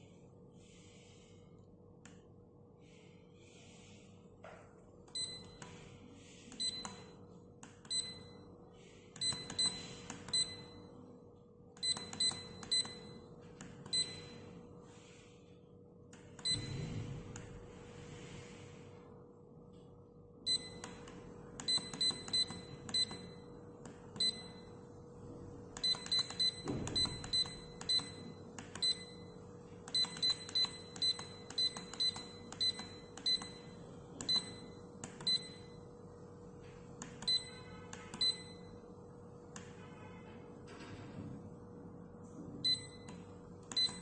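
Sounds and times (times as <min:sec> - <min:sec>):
faint steady hum: 0:00.0 - 0:44.0.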